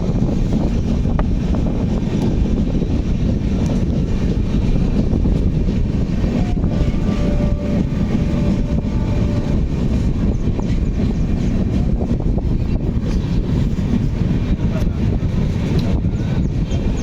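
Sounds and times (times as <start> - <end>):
train rumbling: 0.0 - 17.0.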